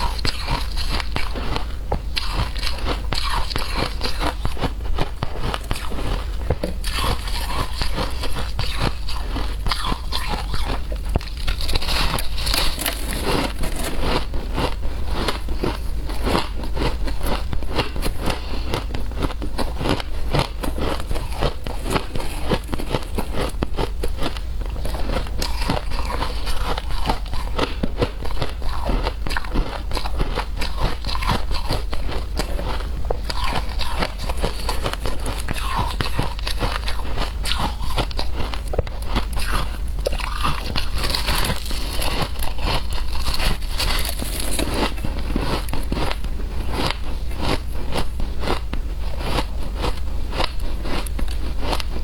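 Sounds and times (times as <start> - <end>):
shaved ice crunching: 6.9 - 15.8, 39.3 - 46.2.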